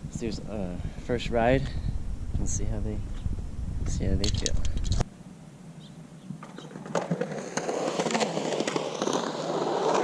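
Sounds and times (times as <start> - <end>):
skateboard rolling on concrete: 6.3 - 10.0.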